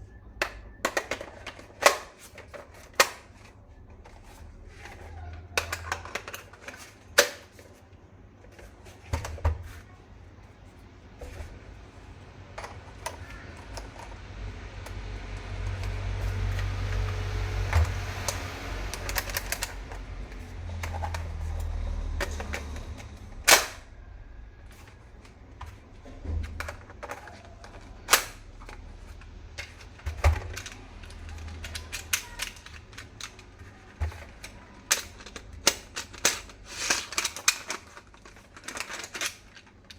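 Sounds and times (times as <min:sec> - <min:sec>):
rustling handling noise: 0:24.5 - 0:39.9.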